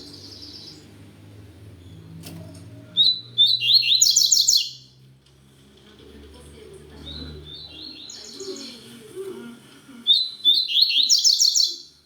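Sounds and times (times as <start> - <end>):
seedeater bird singing: 0.0 - 1.0, 3.0 - 5.0, 7.0 - 8.8, 10.1 - 12.0.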